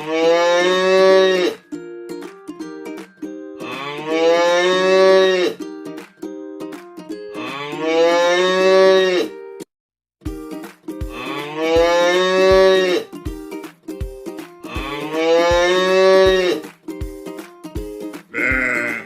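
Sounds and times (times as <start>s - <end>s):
cow mooing: 0.0s - 1.6s, 3.6s - 5.6s, 7.4s - 9.3s, 11.2s - 13.1s, 14.7s - 16.6s, 18.4s - 19.0s
music with plucked notes and beat: 1.6s - 8.3s, 10.2s - 19.0s.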